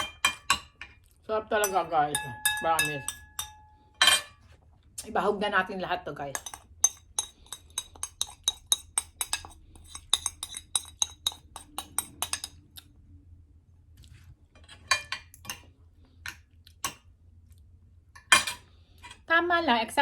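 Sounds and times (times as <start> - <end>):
cutlery clinking on plate: 0.0 - 1.0, 18.2 - 19.2
cutlery scraping plate: 0.0 - 1.0, 1.7 - 4.5, 6.4 - 12.6, 14.6 - 15.7.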